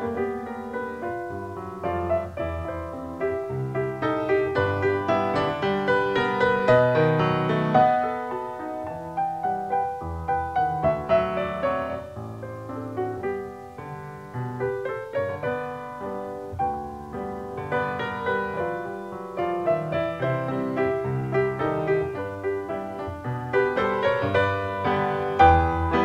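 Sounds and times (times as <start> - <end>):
piano music: 0.0 - 26.0.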